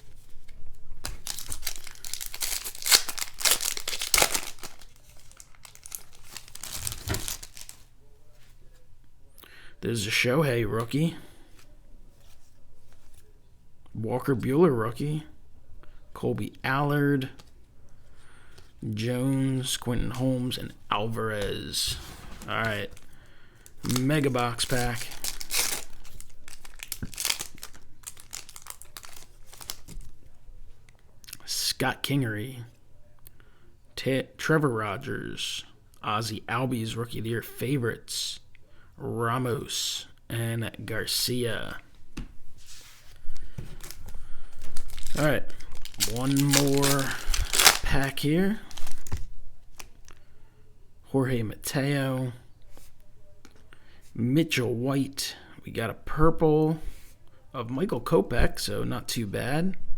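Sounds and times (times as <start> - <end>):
foil wrapper crinkling and tearing: 1.0 - 7.9, 22.8 - 30.1, 43.7 - 50.2.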